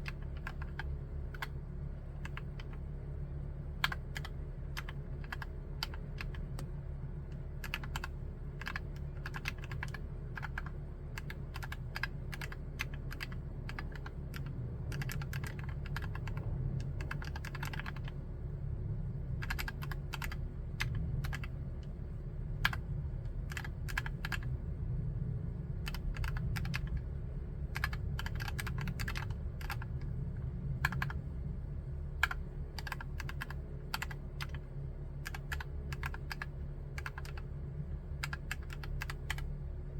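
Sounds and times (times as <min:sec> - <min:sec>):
typing on mechanical keyboard: 0:00.0 - 0:01.6, 0:02.2 - 0:02.8, 0:03.8 - 0:06.7, 0:07.6 - 0:18.2, 0:19.4 - 0:21.6, 0:22.6 - 0:22.8, 0:23.5 - 0:24.5, 0:25.8 - 0:27.1, 0:27.7 - 0:30.0, 0:30.8 - 0:31.2, 0:32.2 - 0:34.6, 0:35.2 - 0:37.5, 0:38.2 - 0:39.5.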